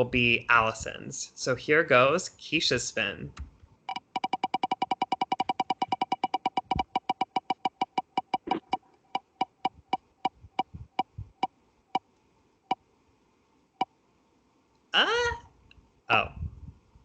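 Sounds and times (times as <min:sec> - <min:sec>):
spinning wheel ticking: 0:03.9 - 0:11.5.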